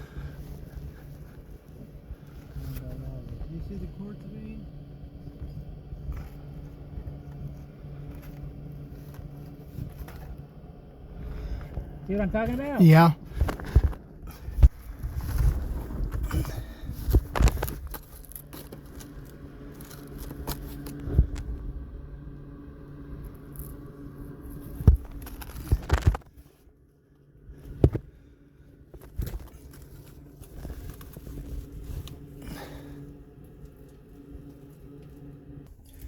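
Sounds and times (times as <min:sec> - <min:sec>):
low hum: 0:00.0 - 0:36.0
knocks and scrapes on loose rock: 0:13.4 - 0:21.4, 0:24.7 - 0:26.4.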